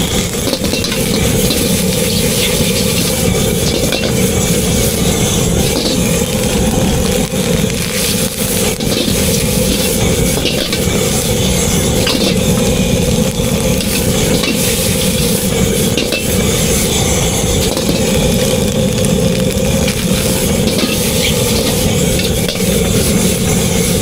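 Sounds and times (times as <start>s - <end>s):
food sizzling in a hot pan: 0.0s - 24.0s
metal utensils clicking: 0.3s - 4.5s, 8.6s - 11.0s, 19.8s - 23.2s.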